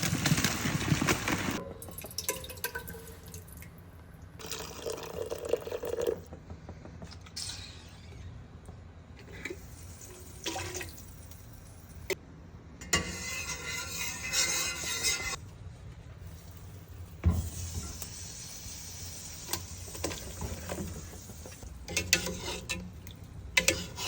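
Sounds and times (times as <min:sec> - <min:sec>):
water dripping: 0:01.7 - 0:06.1.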